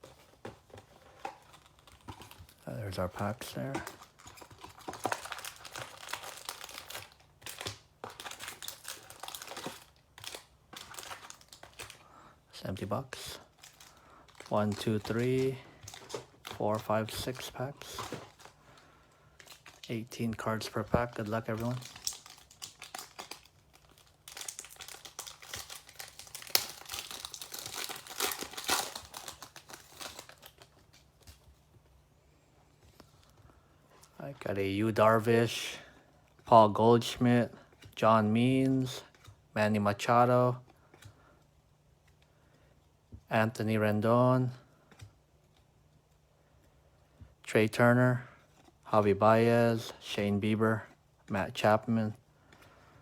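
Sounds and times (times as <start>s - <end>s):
card packs rustling and crinkling: 0.0s - 32.0s
wrapper ripping: 3.2s - 12.0s, 20.6s - 31.4s.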